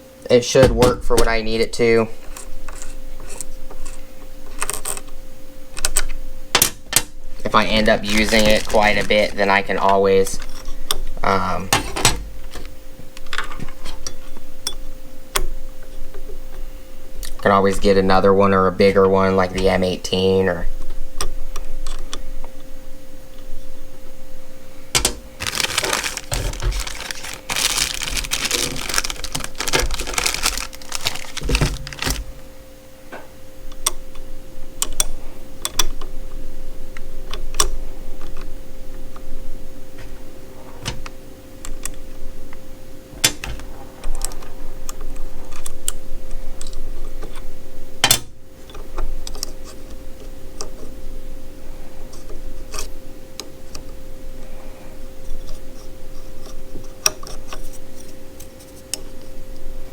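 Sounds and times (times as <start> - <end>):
faint steady hum: 0.0 - 59.9
dense rattling and rustling: 25.4 - 32.4.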